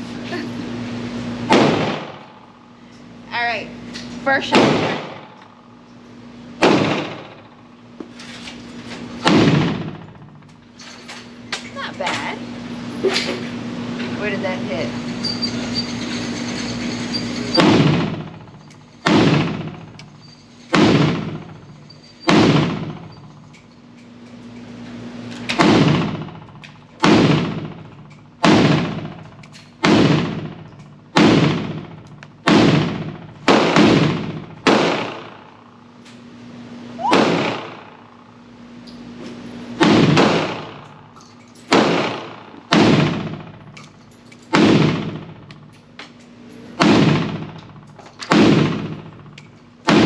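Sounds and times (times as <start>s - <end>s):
pistol gunshots echoing: 1.5s - 2.4s, 4.5s - 5.4s, 6.6s - 7.6s, 9.2s - 10.0s, 29.8s - 35.8s, 37.1s - 38.1s, 39.8s - 41.1s, 41.7s - 43.6s, 46.8s - 47.6s, 48.3s - 49.1s.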